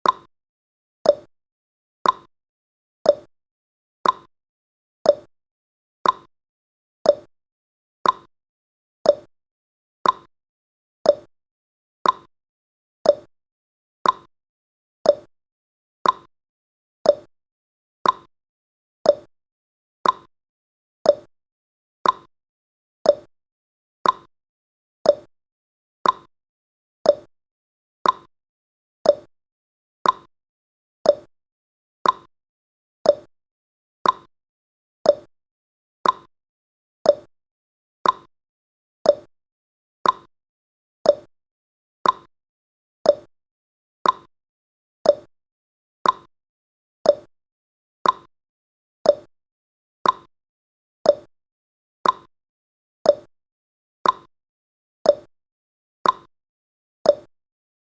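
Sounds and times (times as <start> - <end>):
clock ticking: 34.0 - 34.3, 36.0 - 36.3, 40.0 - 40.3, 42.0 - 42.3, 46.0 - 46.3, 48.0 - 48.3.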